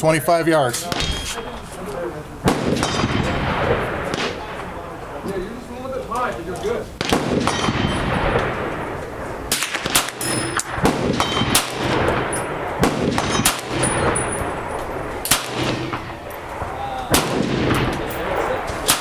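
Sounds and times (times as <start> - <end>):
pistol shots cracking: 2.4 - 4.8, 6.5 - 19.0.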